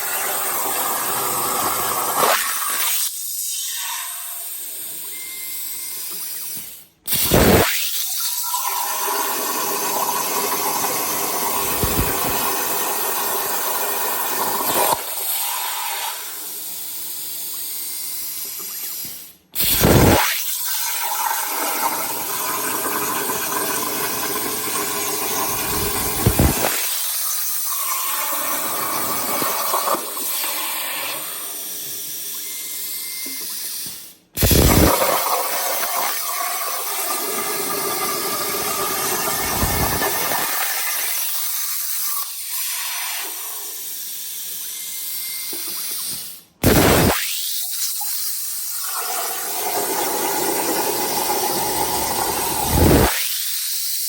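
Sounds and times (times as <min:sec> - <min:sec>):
plasma cutter arc hissing: 0:00.0 - 0:04.9, 0:06.2 - 0:08.4, 0:11.3 - 0:20.7, 0:24.9 - 0:37.1, 0:38.6 - 0:49.5, 0:51.7 - 0:54.0.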